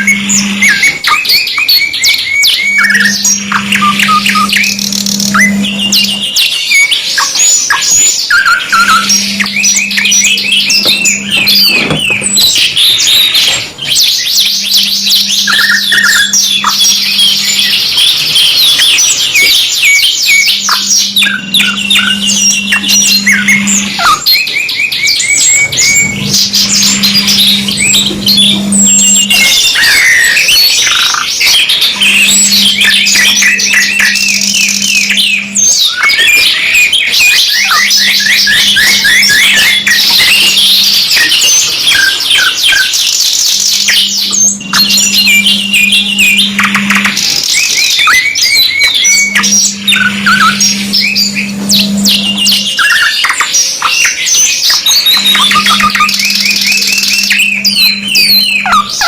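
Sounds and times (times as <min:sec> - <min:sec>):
low steady hum: 0:00.0 - 0:01.1, 0:02.8 - 0:06.4, 0:08.6 - 0:13.9, 0:20.6 - 0:24.4, 0:25.2 - 0:35.9, 0:44.1 - 0:47.3, 0:48.8 - 0:52.8
canaries singing trills: 0:00.0 - 0:59.0.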